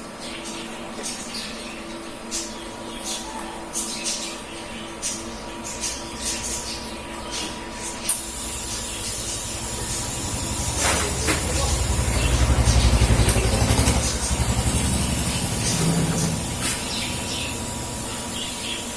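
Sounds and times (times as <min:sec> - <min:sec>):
low pulsing buzz: 0:05.4 - 0:18.9
welding hiss: 0:08.1 - 0:12.2.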